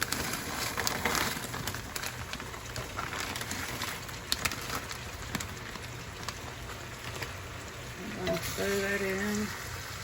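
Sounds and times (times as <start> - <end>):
food sizzling in a skillet: 2.6 - 10.0.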